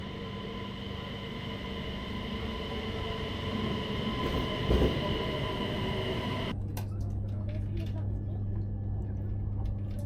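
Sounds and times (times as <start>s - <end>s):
electric whine: 0.0s - 6.5s
train rumbling: 0.0s - 6.5s.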